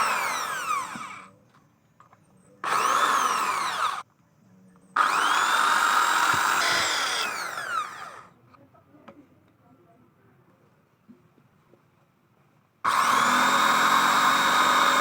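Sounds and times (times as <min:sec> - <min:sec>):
power tool motor whining: 0:00.0 - 0:01.3, 0:02.6 - 0:04.0, 0:05.0 - 0:08.3, 0:12.9 - 0:15.0.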